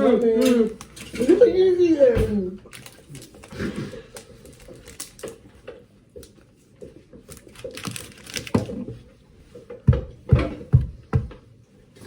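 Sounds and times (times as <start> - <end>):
rustling and crinkling: 2.6 - 10.7.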